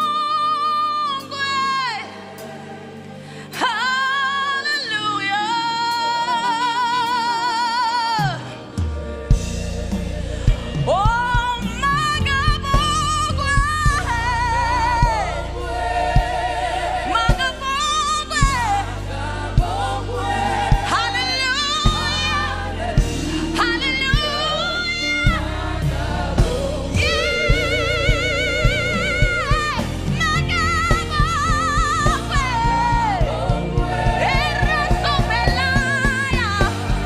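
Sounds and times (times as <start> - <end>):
band with bass and drums: 8.2 - 18.9, 19.5 - 37.0.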